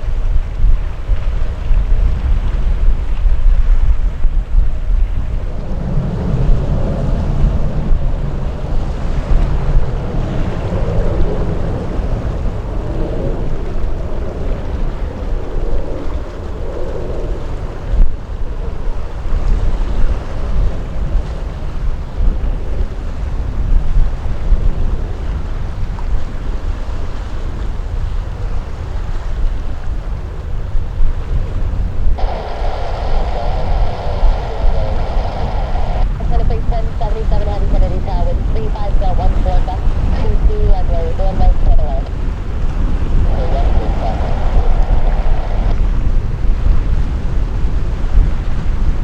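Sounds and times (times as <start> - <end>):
wind buffeting microphone: 0.0 - 49.0
jet aircraft engine: 5.0 - 22.2, 32.1 - 47.0.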